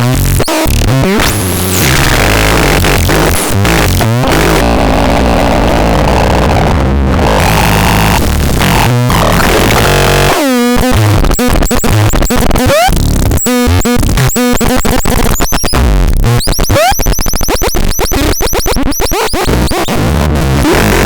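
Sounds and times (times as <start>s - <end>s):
harsh electronic buzzing: 0.0s - 6.4s, 7.1s - 21.0s
electronic pitch sweeps: 8.8s - 20.0s
quick electronic chirps: 16.4s - 19.5s.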